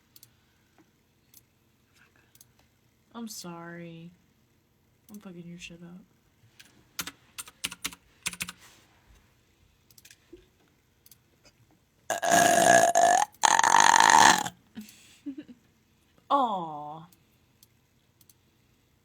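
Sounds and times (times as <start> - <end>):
loud burps: 12.1 - 14.5.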